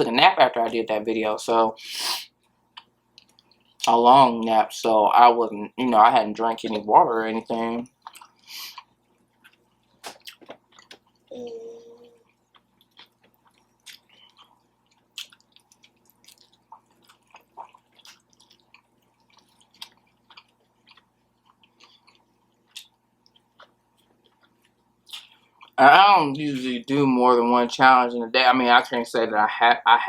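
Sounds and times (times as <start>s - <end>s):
mouth chewing: 7.5s - 11.3s, 12.2s - 25.8s
person humming: 11.3s - 12.2s.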